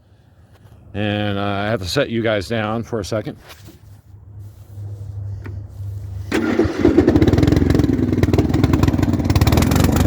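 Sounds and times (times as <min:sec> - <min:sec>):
engine cranking whirr: 0:05.9 - 0:10.0
mower engine running: 0:06.1 - 0:10.0.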